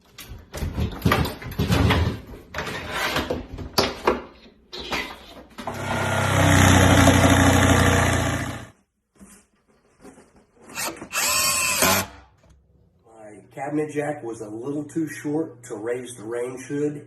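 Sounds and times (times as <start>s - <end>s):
power drill running: 5.6s - 8.7s, 10.7s - 12.2s.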